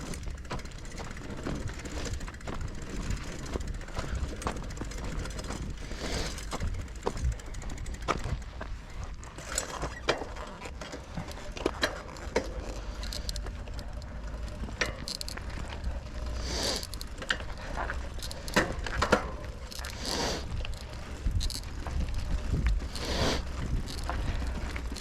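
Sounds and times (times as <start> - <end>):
bicycle parts clicking and rattling: 0.0 - 25.0.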